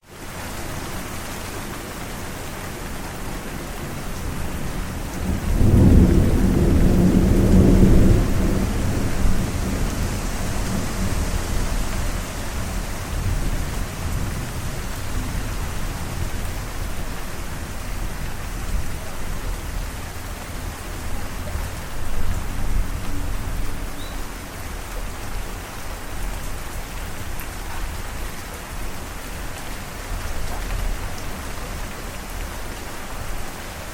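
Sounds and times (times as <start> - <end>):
steady rain: 0.0 - 33.9
rolling thunder: 5.2 - 17.1.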